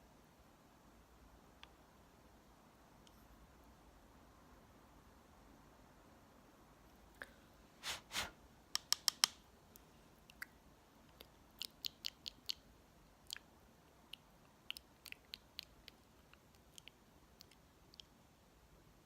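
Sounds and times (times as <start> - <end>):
makeup products clicking and tapping: 8.8 - 9.4.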